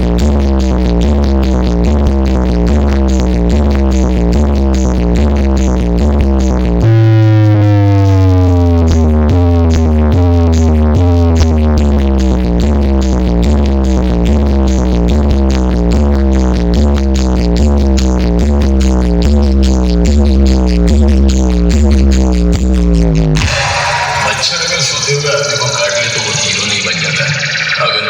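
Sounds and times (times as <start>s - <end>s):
electronic dance music: 6.8s - 11.8s, 23.4s - 28.0s.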